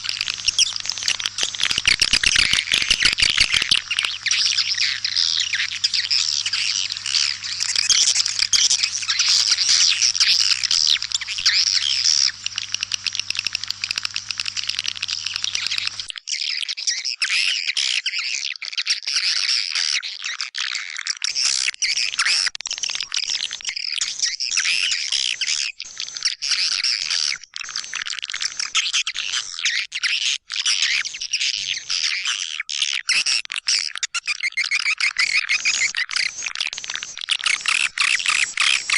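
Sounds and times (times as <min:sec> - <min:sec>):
swiftlets twittering and chirping: 0:00.0 - 0:16.4, 0:34.6 - 0:38.9.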